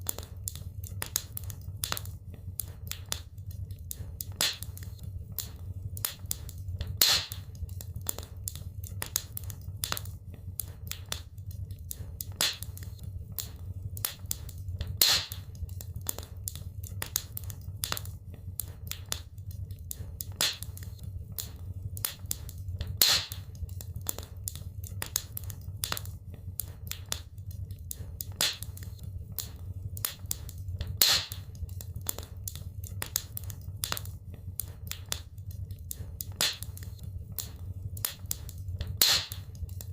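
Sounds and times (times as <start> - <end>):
wood fire crackling: 0.0 - 39.9
loud fire pop: 7.0 - 7.4, 15.0 - 15.4, 23.0 - 23.4, 31.0 - 31.4, 39.0 - 39.4.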